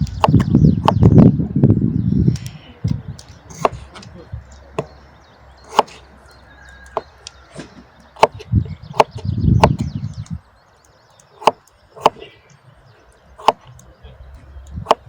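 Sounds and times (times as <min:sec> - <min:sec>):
chopping strikes on wood: 0:03.5 - 0:04.0, 0:05.7 - 0:06.0, 0:07.0 - 0:09.9, 0:11.4 - 0:12.2, 0:13.4 - 0:13.7
dull low thud: 0:07.0 - 0:10.1.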